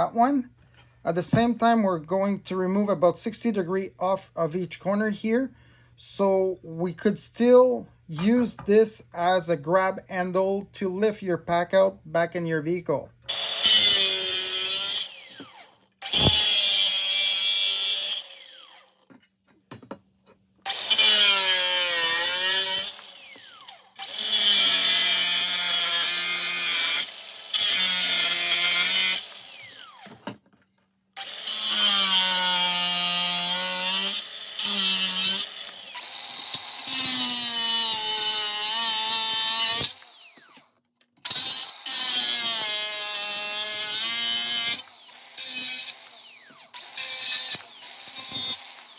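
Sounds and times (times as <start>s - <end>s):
angle grinder cutting metal: 13.3s - 19.0s, 20.7s - 30.2s, 31.2s - 40.6s, 41.2s - 48.9s.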